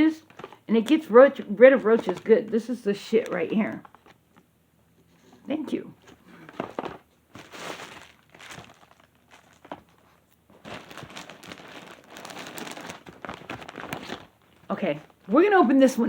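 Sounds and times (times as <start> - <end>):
packaging crinkling: 0.2 - 0.6, 1.7 - 4.2, 6.0 - 15.6.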